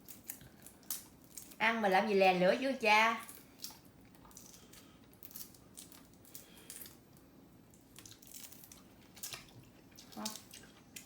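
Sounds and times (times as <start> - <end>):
lychee rind crackling: 7.7 - 11.0.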